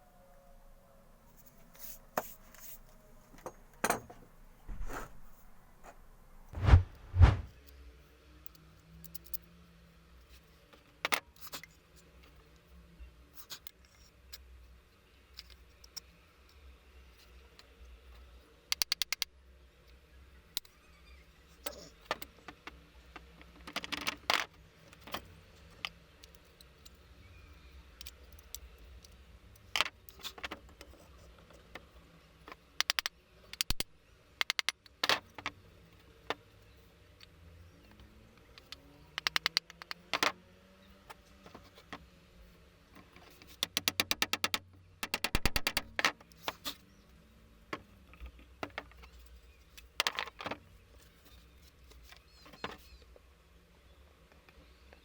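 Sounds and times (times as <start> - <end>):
small hard parts clicking and tapping: 17.6 - 19.3, 21.6 - 27.0, 28.0 - 36.5, 37.9 - 40.4, 43.0 - 46.8.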